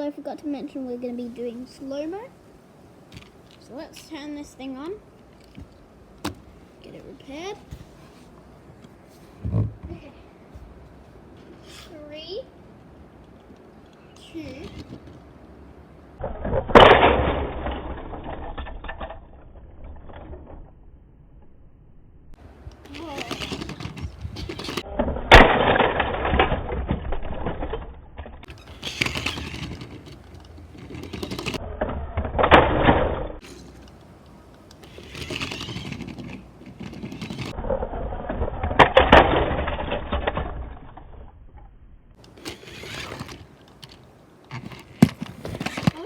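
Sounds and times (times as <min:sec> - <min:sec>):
toy cars clattering: 0:14.2 - 0:15.3, 0:22.8 - 0:24.9, 0:28.4 - 0:31.6, 0:32.7 - 0:37.6, 0:42.2 - 0:46.0
remote-control car ramming: 0:22.9 - 0:26.9, 0:28.4 - 0:33.9, 0:34.8 - 0:37.6, 0:42.3 - 0:43.5.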